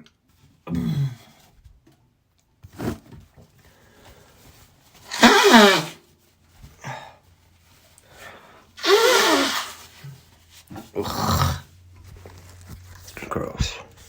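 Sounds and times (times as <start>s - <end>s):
person blowing nose: 5.0s - 6.0s, 8.8s - 10.2s.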